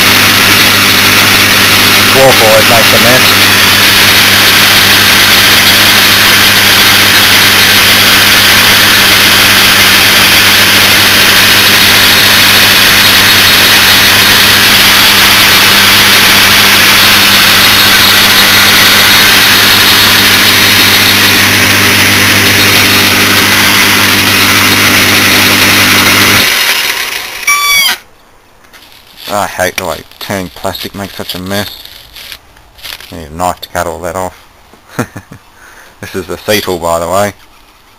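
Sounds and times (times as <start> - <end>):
metal lathe motor running: 0.0 - 28.0.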